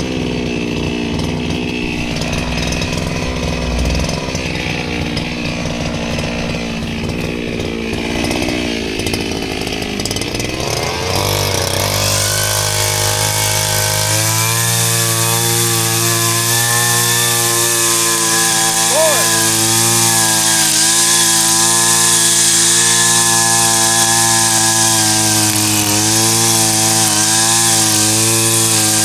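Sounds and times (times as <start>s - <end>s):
small petrol engine running: 0.0s - 29.0s.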